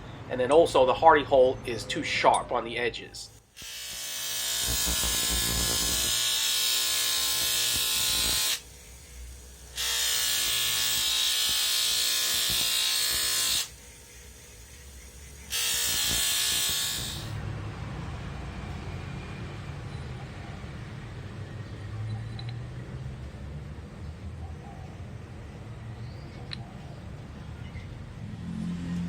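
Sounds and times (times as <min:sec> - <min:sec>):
electric tool buzzing on steel: 0:03.3 - 0:17.5.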